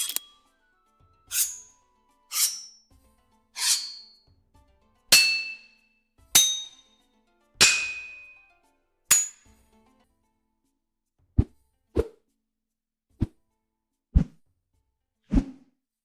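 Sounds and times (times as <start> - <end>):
sword striking metal: 1.3 - 1.7, 2.3 - 2.8, 3.6 - 4.2, 5.1 - 5.8, 6.4 - 6.9, 7.6 - 8.4, 9.1 - 9.5.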